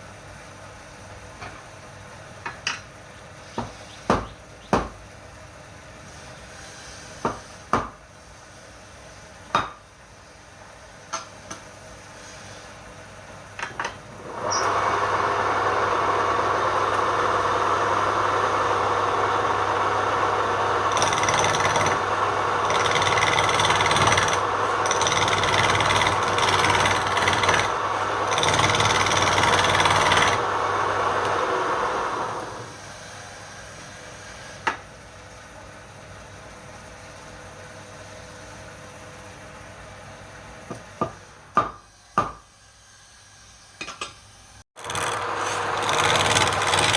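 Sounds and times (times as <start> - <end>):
wood lathe humming: 14.2 - 32.8, 44.8 - 46.9
tool scraping spinning wood: 14.2 - 34.8, 44.8 - 46.9.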